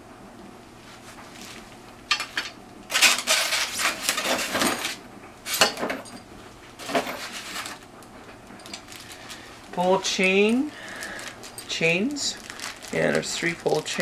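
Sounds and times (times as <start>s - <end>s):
small metal parts clinking: 8.6s - 9.4s, 10.2s - 14.0s.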